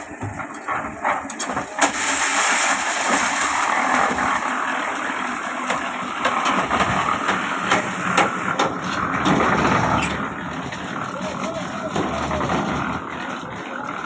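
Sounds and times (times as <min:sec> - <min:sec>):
sharp knocks and clanks: 0:00.0 - 0:02.0, 0:05.6 - 0:13.3
engine running: 0:00.0 - 0:14.0.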